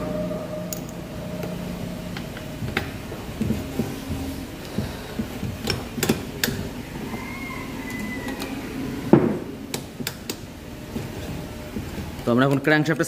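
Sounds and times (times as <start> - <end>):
metal gears clicking and knocking: 2.2 - 7.2.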